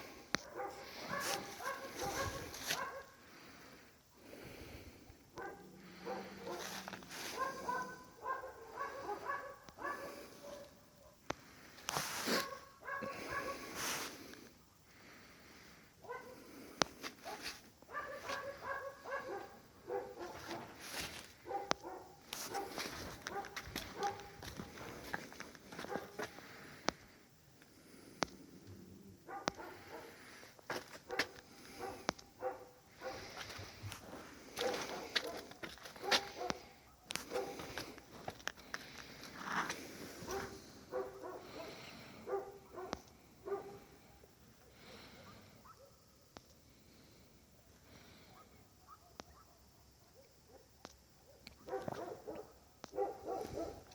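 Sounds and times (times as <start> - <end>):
dog barking: 0.4 - 3.2, 5.4 - 11.2, 12.4 - 13.7, 16.0 - 16.4, 17.2 - 20.8, 21.4 - 24.5, 25.7 - 26.2, 29.2 - 30.2, 31.0 - 33.4, 34.6 - 37.7, 40.2 - 43.9, 45.3 - 46.1, 48.3 - 53.9.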